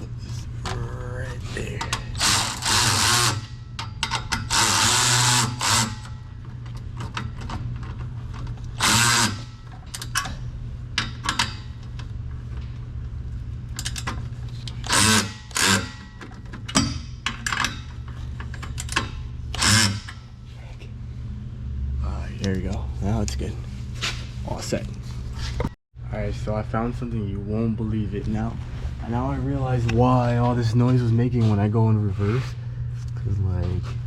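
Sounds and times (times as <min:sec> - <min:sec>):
steady low hum: 0:00.0 - 0:34.0
power tool bursts: 0:02.2 - 0:03.5, 0:04.5 - 0:06.1, 0:08.8 - 0:09.6, 0:14.8 - 0:16.0, 0:19.5 - 0:20.2.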